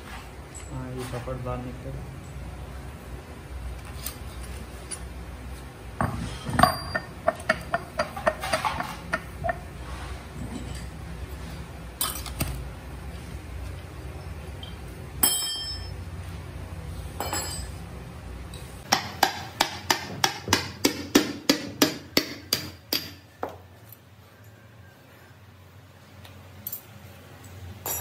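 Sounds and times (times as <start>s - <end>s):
hammer striking metal: 15.2s - 16.0s, 18.9s - 23.2s.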